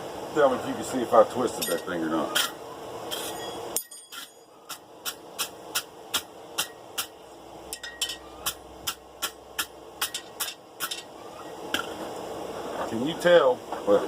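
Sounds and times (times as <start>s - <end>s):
wire brush scrubbing steel: 1.6s - 7.1s.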